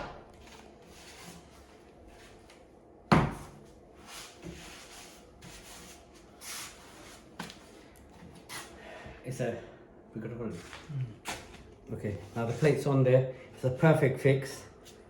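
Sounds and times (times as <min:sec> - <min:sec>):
soft scraping and rustling: 0:10.5 - 0:12.9.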